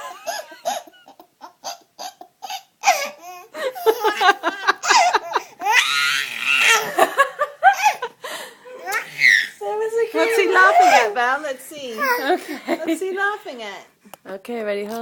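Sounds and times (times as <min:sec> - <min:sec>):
baby laughing: 0:00.0 - 0:08.1, 0:08.8 - 0:09.6, 0:10.2 - 0:11.2.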